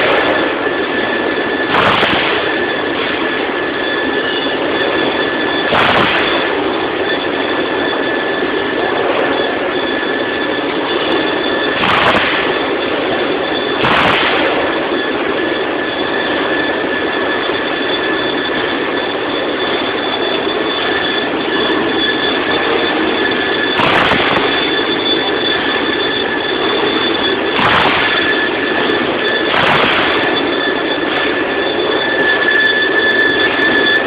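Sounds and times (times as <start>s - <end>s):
band saw cutting steel: 0.0s - 34.0s
hissing surges: 5.6s - 7.4s, 22.4s - 25.9s, 26.5s - 34.0s.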